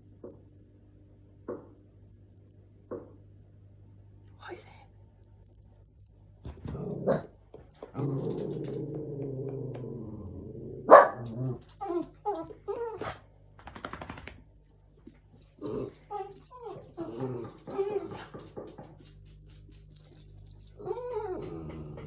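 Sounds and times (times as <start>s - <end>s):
dog growling: 6.5s - 13.2s, 15.5s - 18.9s, 20.7s - 22.0s
dog barking: 7.0s - 7.3s, 10.9s - 11.3s.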